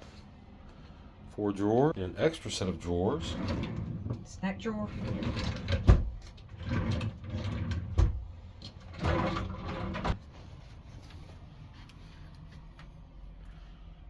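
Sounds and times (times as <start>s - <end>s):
drawers sliding open and shut: 3.0s - 10.2s.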